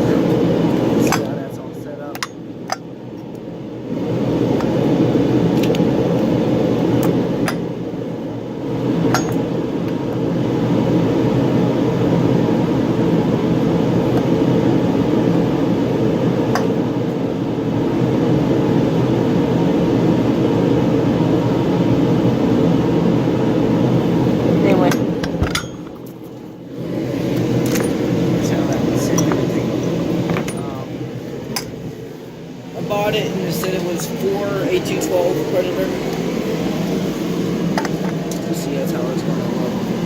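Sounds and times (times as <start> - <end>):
space heater blowing: 0.0 - 40.0.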